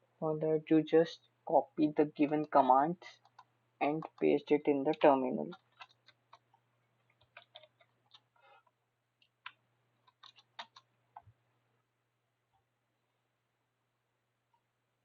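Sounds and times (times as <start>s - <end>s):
mouse and keyboard clicks: 3.2s - 8.3s, 9.2s - 11.3s.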